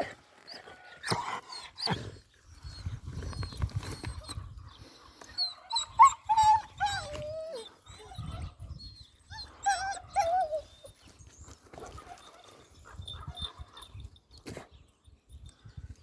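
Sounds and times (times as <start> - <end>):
dog whining: 5.3 - 11.0.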